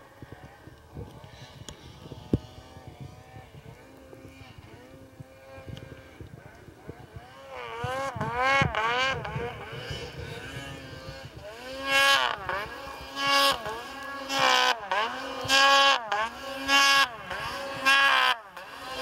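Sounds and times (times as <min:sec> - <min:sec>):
engine revving: 0:00.0 - 0:19.0.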